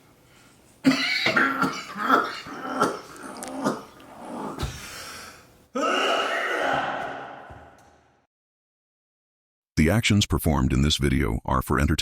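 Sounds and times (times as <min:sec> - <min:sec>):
man coughing hoarsely: 0:00.8 - 0:03.9.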